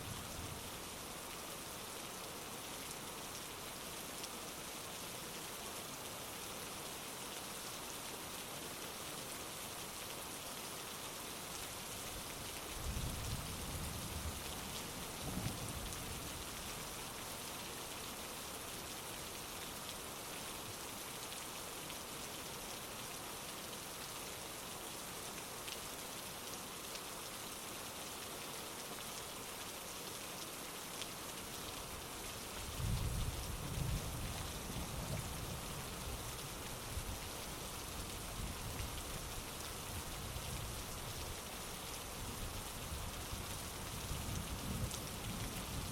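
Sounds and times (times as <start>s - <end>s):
heavy rain falling: 28.7s - 45.9s.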